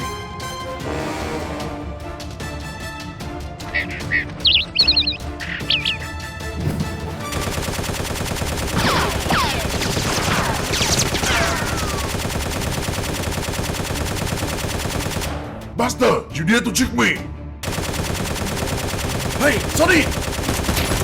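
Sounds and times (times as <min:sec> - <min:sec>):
rapid automatic gunfire: 0:07.3 - 0:15.5, 0:17.6 - 0:21.0.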